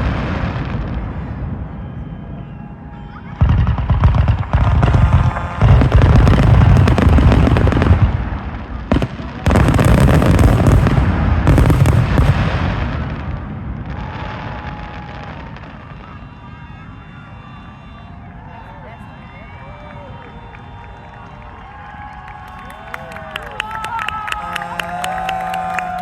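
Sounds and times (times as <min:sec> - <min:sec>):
sharp firework crack: 0:00.0 - 0:02.2, 0:03.3 - 0:16.2
fireworks booming and crackling: 0:00.0 - 0:18.5.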